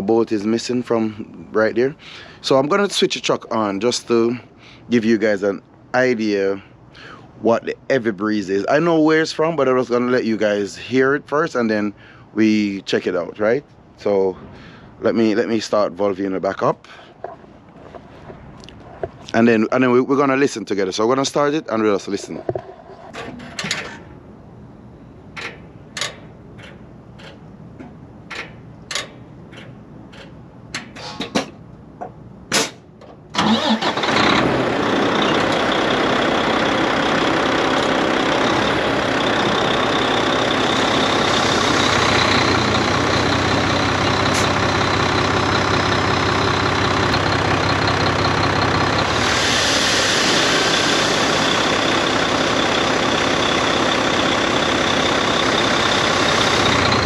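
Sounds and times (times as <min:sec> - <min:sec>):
diesel engine starting and running: 0:33.1 - 0:57.0.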